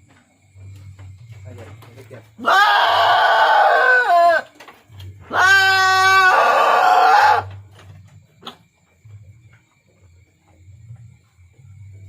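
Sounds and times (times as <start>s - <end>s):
goat bleating loudly: 2.4s - 4.5s, 5.2s - 7.5s.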